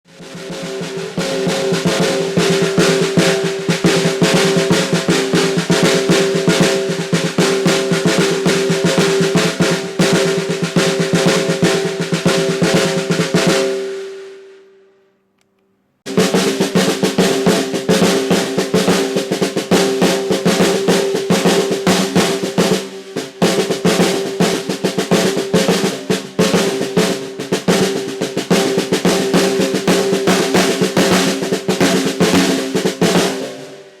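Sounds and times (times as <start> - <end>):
snare drum rolls: 0.0 - 14.4, 16.1 - 34.0
drum shell ringing: 0.1 - 14.2.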